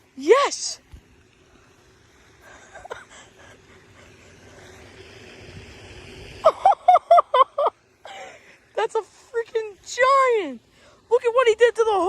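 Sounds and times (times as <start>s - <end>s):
soft steady hiss: 0.0s - 12.0s
man laughing excitedly: 6.4s - 7.8s.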